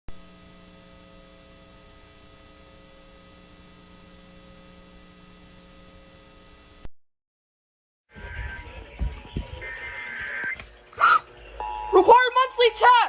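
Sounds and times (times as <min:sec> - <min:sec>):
electrical hum: 0:00.1 - 0:06.9.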